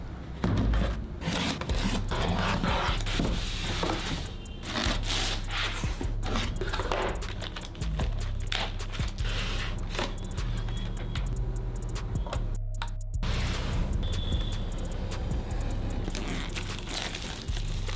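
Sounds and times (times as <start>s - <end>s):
rubbing and scraping noises: 0.4s - 12.6s, 13.2s - 17.9s.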